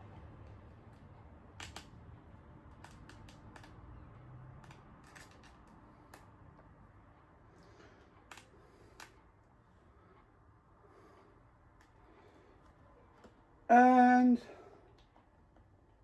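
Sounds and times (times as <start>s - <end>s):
screwdriver clicks and taps: 1.6s - 1.9s, 2.7s - 3.8s.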